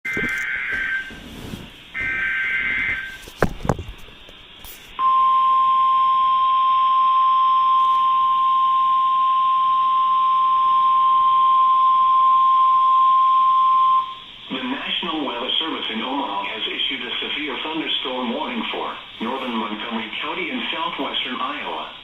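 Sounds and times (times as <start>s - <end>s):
single-pitch alarm tone: 0.0s - 1.2s, 2.0s - 3.2s, 5.0s - 14.3s.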